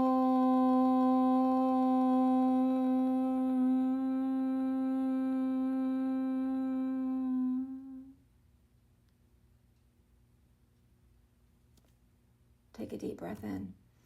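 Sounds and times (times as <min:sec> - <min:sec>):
woman chanting low om: 0:00.0 - 0:08.2.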